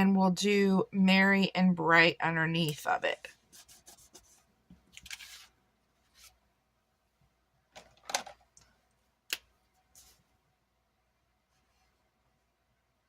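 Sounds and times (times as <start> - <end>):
paper rustles and scrapes: 5.0 - 6.4.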